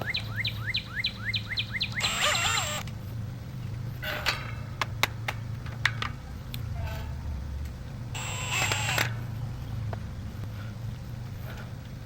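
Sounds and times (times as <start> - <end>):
bird chirping: 0.0 - 2.8
sharp clicks: 0.0 - 3.0, 7.6 - 9.3.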